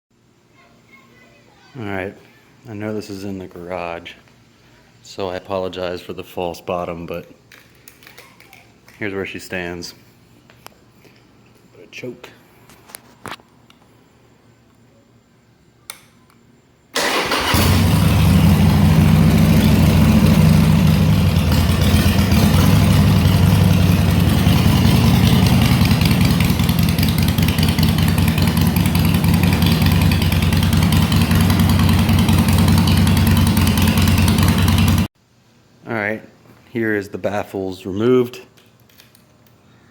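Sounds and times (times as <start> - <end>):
motorcycle engine starting: 16.9 - 35.1
motorcycle engine idling loudly: 17.0 - 35.1.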